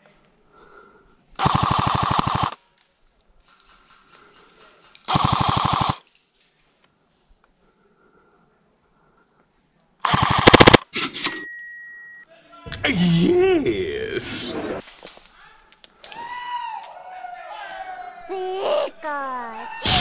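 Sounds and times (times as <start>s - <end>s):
airsoft gun automatic bursts: 1.4s - 2.6s, 5.1s - 6.0s, 10.0s - 10.9s.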